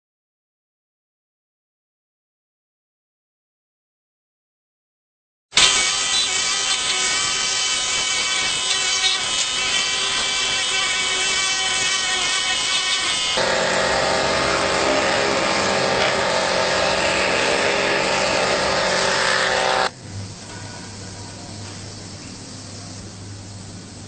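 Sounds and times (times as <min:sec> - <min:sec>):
machine motor whining: 0:05.6 - 0:19.9.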